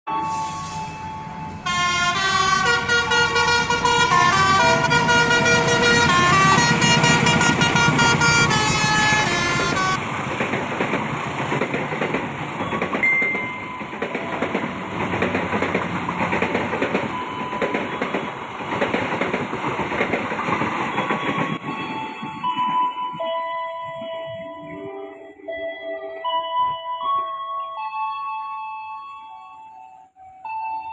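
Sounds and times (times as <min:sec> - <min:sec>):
train horn sounding changing tones: 0:00.2 - 0:10.0.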